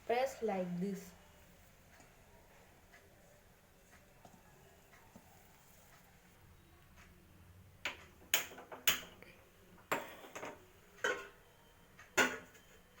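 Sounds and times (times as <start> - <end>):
kitchen utensils clinking: 9.9 - 11.4.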